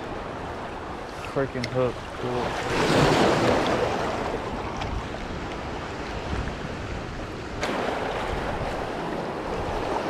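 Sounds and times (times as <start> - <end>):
sea water surging: 0.0 - 10.0
wind on microphone: 2.4 - 10.0.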